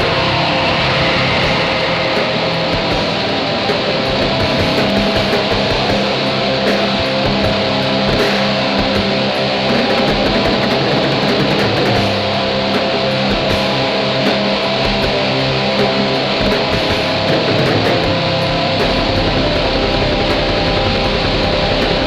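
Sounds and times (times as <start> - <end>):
drum hits: 0.0 - 15.2, 15.8 - 22.0
distorted electric guitar: 0.0 - 22.0.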